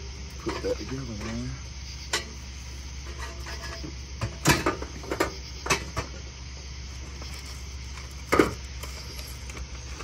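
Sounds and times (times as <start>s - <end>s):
steady low hum: 0.0s - 10.0s
tools and engine parts clinking: 3.0s - 6.2s.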